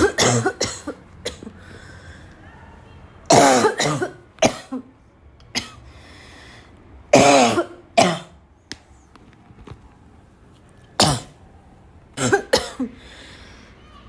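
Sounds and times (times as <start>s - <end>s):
person barking cough: 0.0s - 1.5s, 3.3s - 4.8s, 7.2s - 8.3s, 12.2s - 12.9s.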